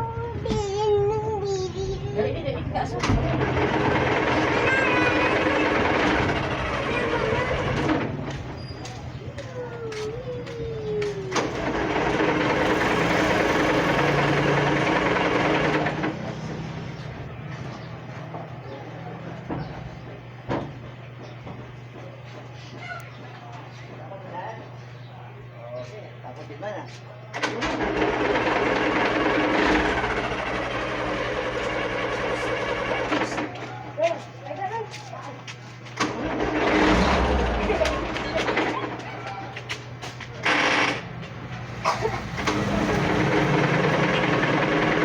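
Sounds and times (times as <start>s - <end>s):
heavy engine revving: 2.7s - 20.1s, 27.4s - 33.5s, 36.0s - 45.0s
falling whine: 36.2s - 39.6s.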